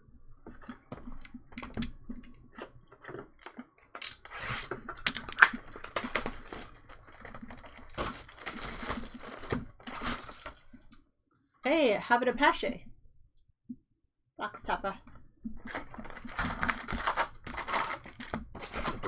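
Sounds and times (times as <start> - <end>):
plastic wrap crinkling and tearing: 4.0 - 11.0, 15.7 - 19.0.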